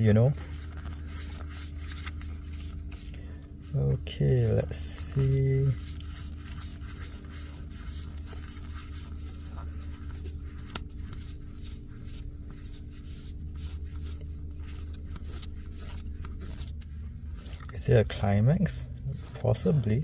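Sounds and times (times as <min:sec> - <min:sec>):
steady low hum: 0:00.0 - 0:20.0
cards sliding and flicking: 0:00.5 - 0:03.1, 0:05.2 - 0:17.8.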